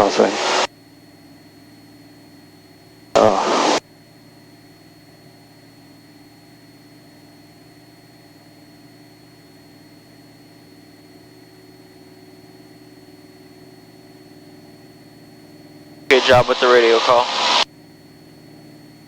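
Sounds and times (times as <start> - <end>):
airplane engine drone: 0.0 - 0.7, 3.2 - 3.8, 13.3 - 17.6
high whine: 0.0 - 0.7, 3.2 - 3.8, 16.1 - 17.7.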